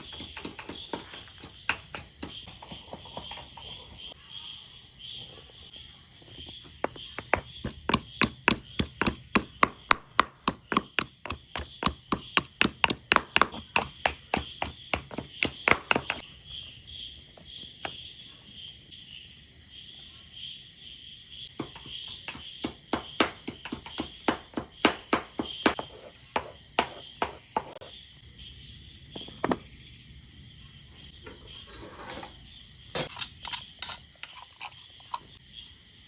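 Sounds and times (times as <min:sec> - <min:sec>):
rapid knocking of food preparation: 0:00.0 - 0:04.2, 0:06.3 - 0:16.3, 0:21.6 - 0:27.9
crickets chirping: 0:00.0 - 0:36.0.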